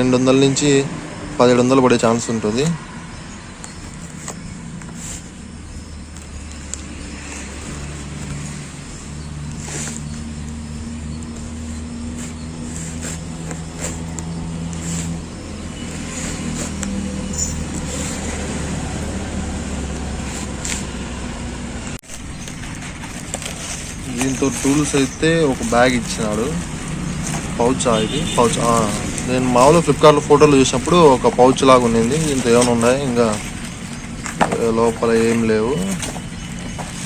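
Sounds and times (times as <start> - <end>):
vehicle engine humming: 0.0 - 37.0
packaging clicks and knocks: 22.0 - 37.0.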